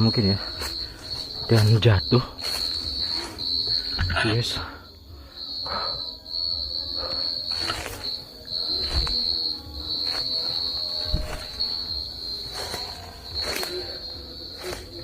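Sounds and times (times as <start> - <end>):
insects trilling: 0.0 - 15.0
footsteps in leaf litter: 0.4 - 3.4, 10.0 - 11.8, 12.4 - 15.0.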